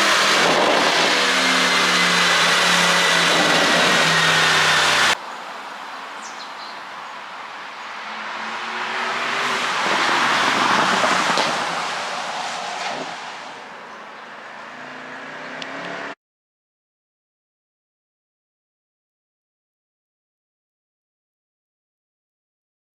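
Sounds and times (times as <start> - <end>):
car driving past: 7.0 - 16.2.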